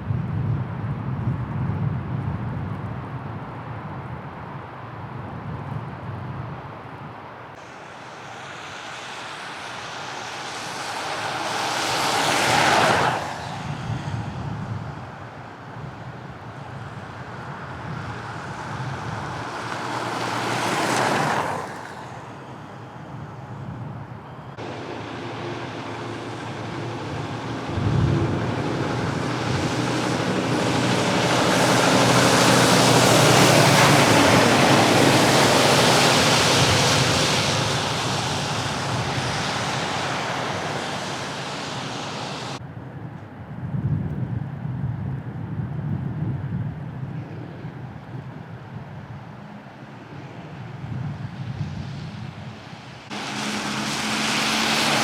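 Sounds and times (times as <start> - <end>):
traffic rushing: 7.5 - 42.6, 47.2 - 55.0
cars passing: 7.6 - 42.6, 47.2 - 55.0.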